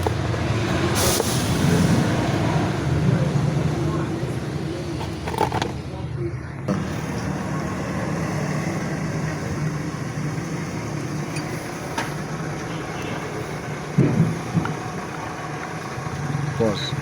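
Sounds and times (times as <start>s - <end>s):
low engine hum: 0.0s - 17.0s.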